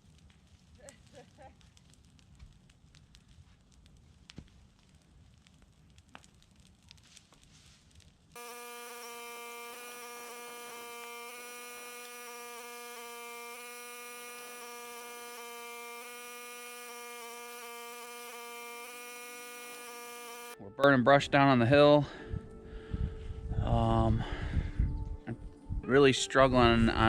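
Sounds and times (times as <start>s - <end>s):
faint crackling: 0.0s - 8.4s
steady electric buzz: 8.4s - 20.6s.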